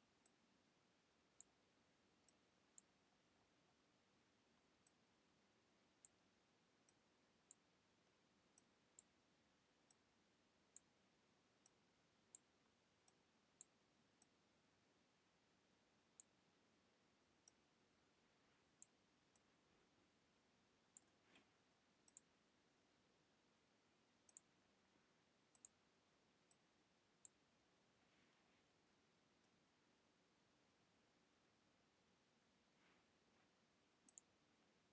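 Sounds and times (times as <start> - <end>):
computer mouse clicks: 20.9 - 21.4, 22.1 - 22.3, 24.3 - 24.5, 25.5 - 25.8, 34.1 - 34.3.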